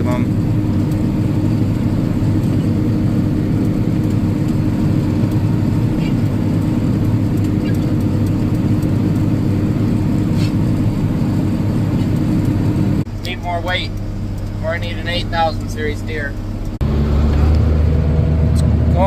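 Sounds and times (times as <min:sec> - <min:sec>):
tractor diesel engine under load: 0:00.0 - 0:19.0.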